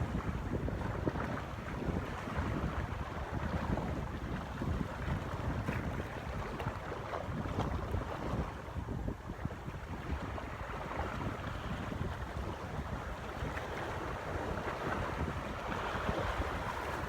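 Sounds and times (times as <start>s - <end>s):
wind rumbling on microphone: 0.0s - 17.0s
rushing water: 10.2s - 17.0s.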